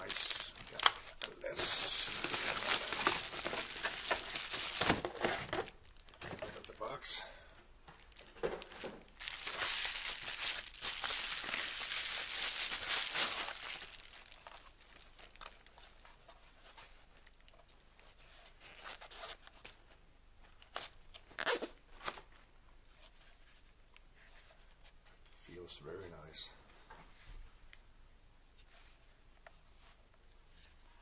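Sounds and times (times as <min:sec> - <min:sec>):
packaging crinkling and tearing: 0:00.0 - 0:07.1, 0:07.9 - 0:16.2.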